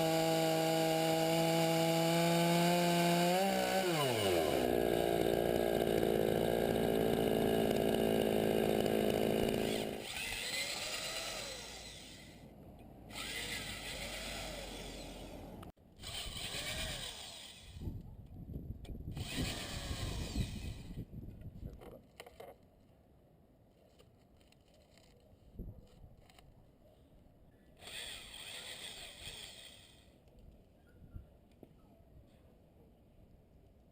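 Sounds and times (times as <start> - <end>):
chainsaw engine running at high revs: 0.0 - 12.4, 13.1 - 17.7, 19.2 - 20.7
scraping and handling noises: 23.7 - 26.6.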